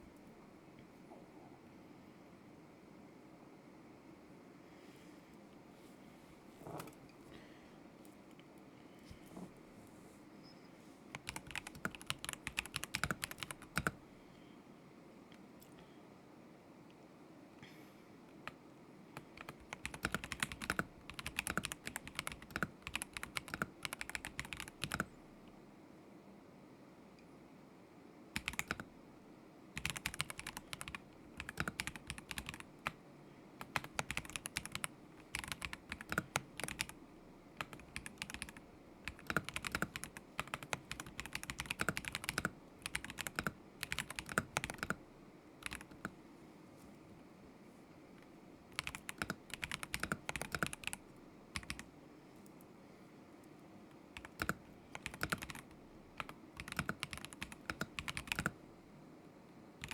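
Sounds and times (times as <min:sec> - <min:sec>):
mechanical keyboard typing: 0:11.1 - 0:14.0, 0:19.2 - 0:25.2, 0:28.4 - 0:28.9, 0:29.8 - 0:33.0, 0:33.6 - 0:37.0, 0:37.6 - 0:45.0, 0:45.6 - 0:46.2, 0:48.7 - 0:51.9, 0:54.2 - 0:58.6.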